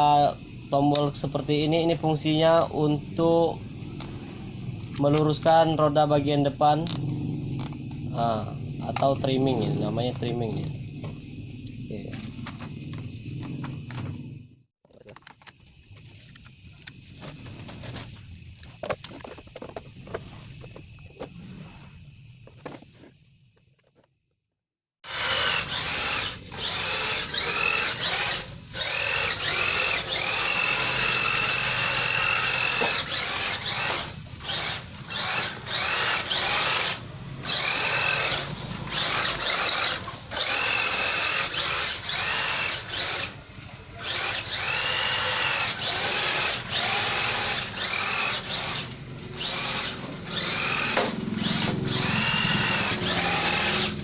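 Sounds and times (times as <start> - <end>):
electric motor whining in bursts: 25.0 - 54.0.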